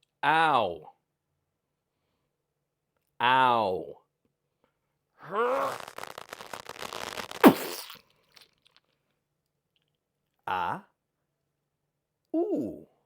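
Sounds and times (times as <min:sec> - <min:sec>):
person groaning and creaking: 0:05.2 - 0:08.0
vocal squeak sliding down: 0:05.2 - 0:08.0.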